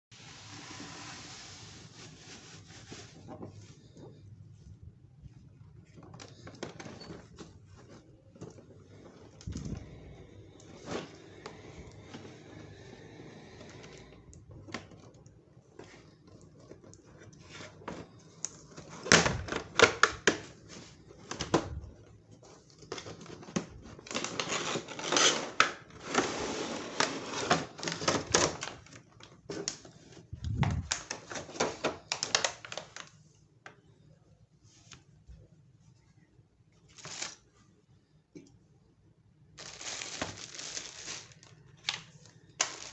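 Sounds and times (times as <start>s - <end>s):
packaging rustling: 22.6s - 33.2s, 36.9s - 37.5s, 39.6s - 42.9s
plastic clicks and crinkles: 27.0s - 33.8s, 39.6s - 42.9s.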